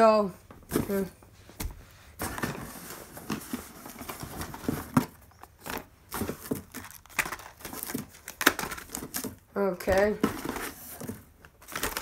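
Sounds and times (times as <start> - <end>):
packaging rustling: 2.1 - 12.0.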